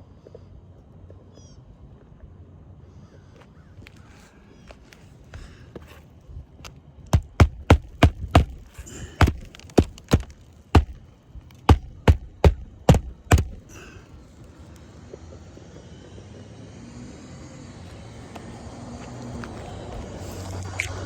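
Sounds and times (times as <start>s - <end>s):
hammer strikes on roofing: 7.1s - 11.0s, 11.7s - 14.0s.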